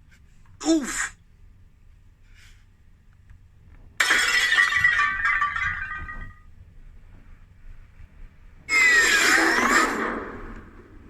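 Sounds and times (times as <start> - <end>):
cartoon glass shattering: 4.0 - 6.4
glass pieces tinkling: 4.0 - 6.4.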